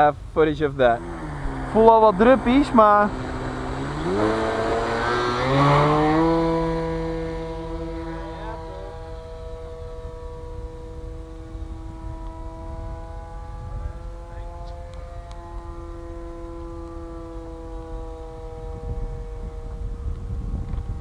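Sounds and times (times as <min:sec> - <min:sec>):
electric model plane motor whine: 0:00.9 - 0:21.0.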